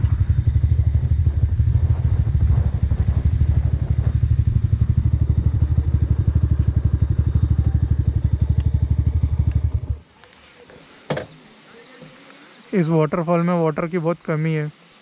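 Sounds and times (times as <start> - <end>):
motorcycle engine running at low revs: 0.0 - 10.1.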